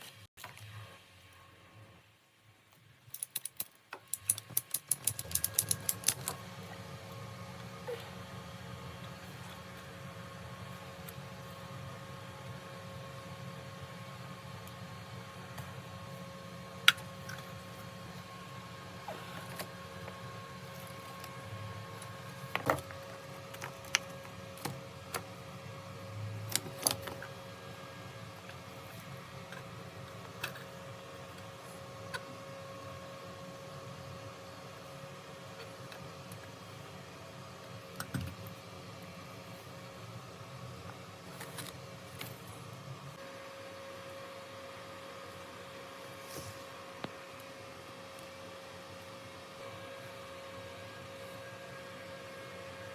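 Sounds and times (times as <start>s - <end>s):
low steady hum: 0.0s - 52.9s
sharp mechanical clicks: 3.1s - 6.4s.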